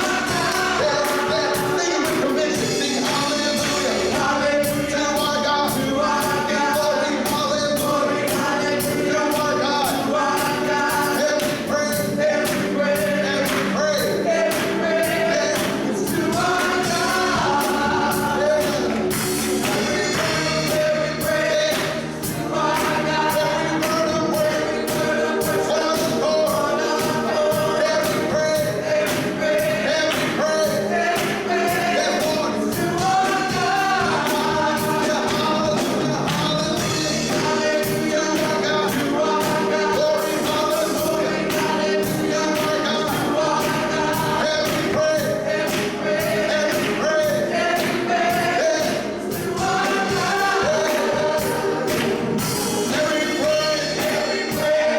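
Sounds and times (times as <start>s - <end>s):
gospel choir singing: 0.0s - 54.9s
steady drum beat: 0.0s - 54.9s.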